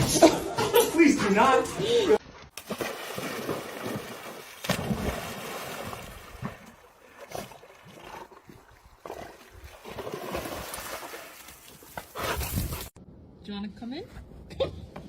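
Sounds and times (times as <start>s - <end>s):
water splashing and sloshing: 1.0s - 13.0s.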